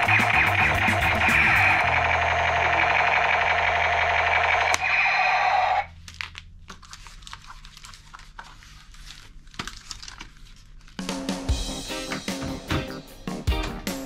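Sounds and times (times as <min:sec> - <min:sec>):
background music: 0:00.0 - 0:02.9, 0:11.0 - 0:14.0.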